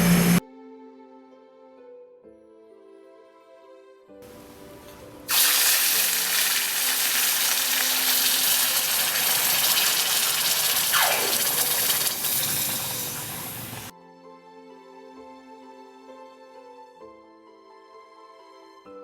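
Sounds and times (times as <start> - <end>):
quiet background music: 0.4 - 10.2, 13.9 - 19.0
hissing boiling water: 4.2 - 13.9
falling whistle: 10.8 - 12.5.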